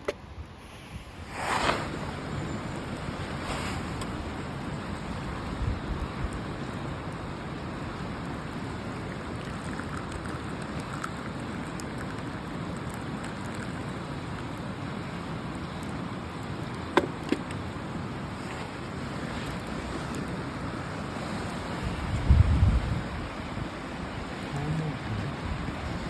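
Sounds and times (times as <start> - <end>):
river water rushing: 6.5 - 22.2.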